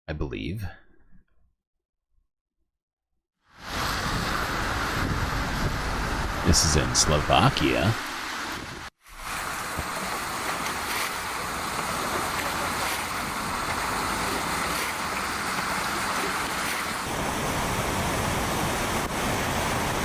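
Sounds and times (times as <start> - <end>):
wind noise on microphone: 3.6 - 7.0, 8.2 - 8.9
floodwater rushing: 3.6 - 20.0.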